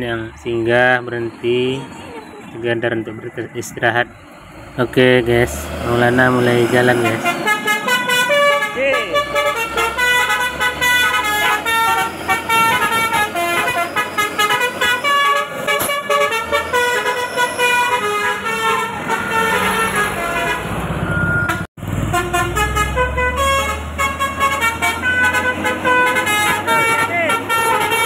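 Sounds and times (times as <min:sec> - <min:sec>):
truck engine running: 0:00.0 - 0:28.0
multi-tone air horn melody: 0:06.3 - 0:20.7, 0:21.5 - 0:28.0.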